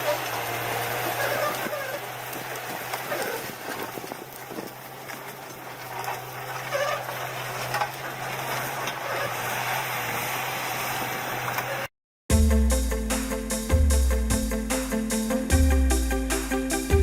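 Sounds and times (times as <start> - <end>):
clattering: 0.0 - 9.4
machine engine humming: 0.0 - 11.9.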